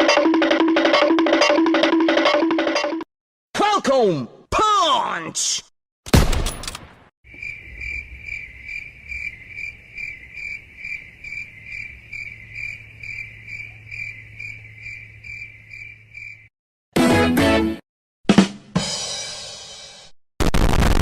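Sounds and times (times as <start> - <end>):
crickets chirping: 7.3 - 16.5.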